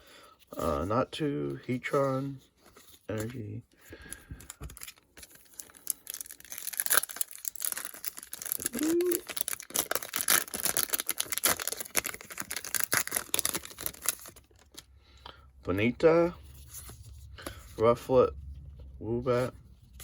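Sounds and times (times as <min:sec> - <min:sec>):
foil wrapper crinkling and tearing: 0:04.0 - 0:14.9.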